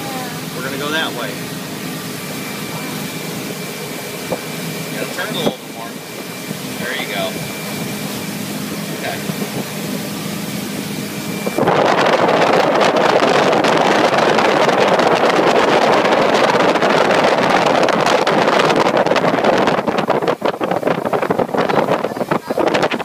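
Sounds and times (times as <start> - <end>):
motorboat engine running: 0.0 - 23.0
wind rushing on microphone: 0.0 - 23.0.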